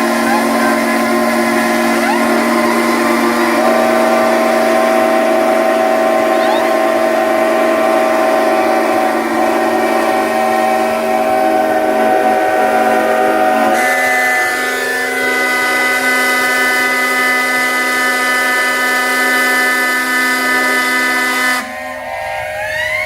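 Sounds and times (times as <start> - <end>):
steam whistles blowing: 0.0 - 23.0.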